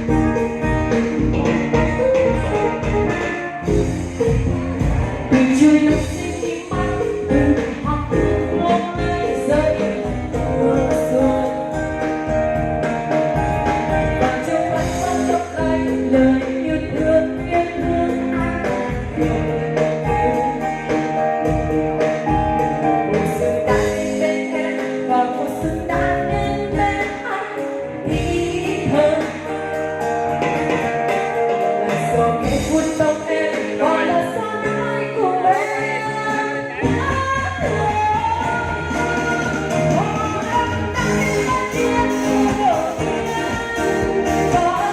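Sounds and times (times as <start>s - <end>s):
music with singing voice: 0.0s - 44.9s.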